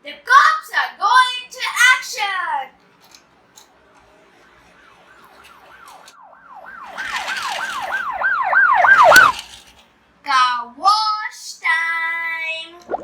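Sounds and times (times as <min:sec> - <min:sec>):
toy siren wailing: 0:04.6 - 0:09.5
noisy rattle: 0:06.9 - 0:08.2, 0:08.9 - 0:09.8.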